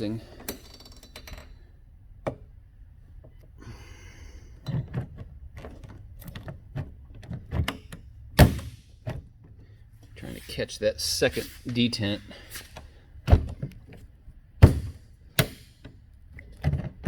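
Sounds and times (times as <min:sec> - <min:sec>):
car door latch clicking: 0:04.9 - 0:09.2
car door thunk: 0:06.7 - 0:09.3, 0:13.2 - 0:13.8, 0:14.6 - 0:15.8.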